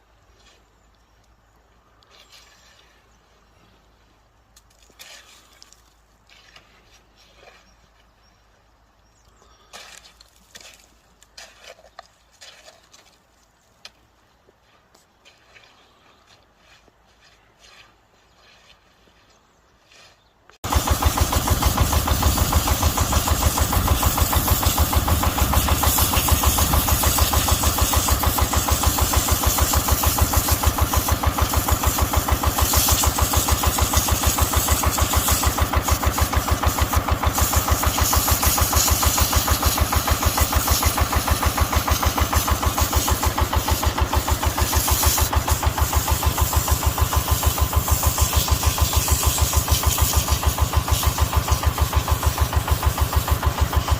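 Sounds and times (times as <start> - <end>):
excavator diesel engine running: 20.6 - 53.9.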